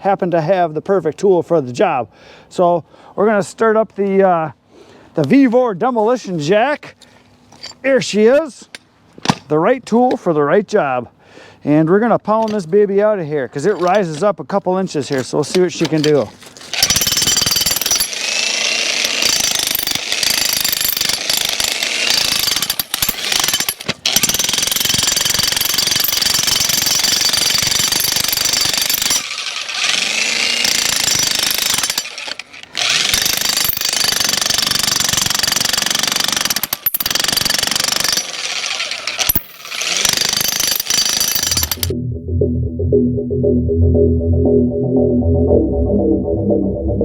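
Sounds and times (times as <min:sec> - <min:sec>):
jackhammer chiselling concrete: 0:16.8 - 0:41.9
music: 0:41.9 - 0:47.0.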